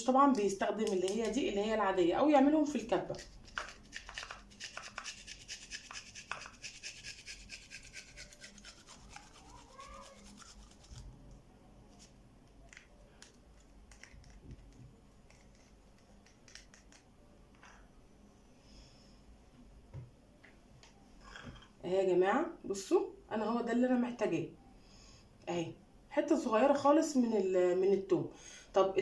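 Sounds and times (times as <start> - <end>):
garlic rasping on a grater: 3.2 - 11.0.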